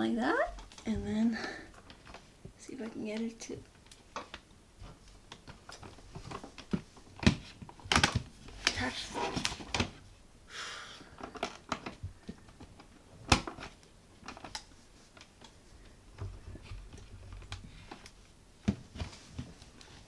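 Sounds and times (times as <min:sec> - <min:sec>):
plastic clicking and scraping: 0:11.2 - 0:15.6.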